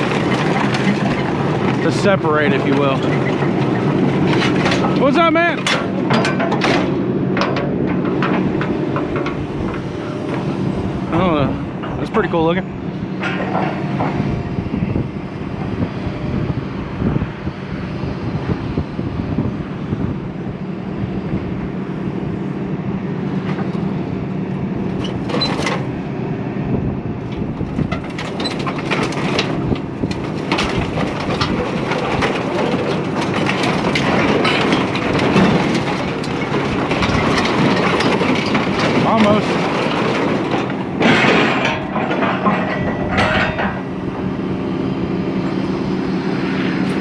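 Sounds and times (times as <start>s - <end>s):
scrap metal clanking: 0.0s - 14.4s, 24.9s - 26.0s, 27.2s - 44.4s
wind noise: 5.9s - 47.0s.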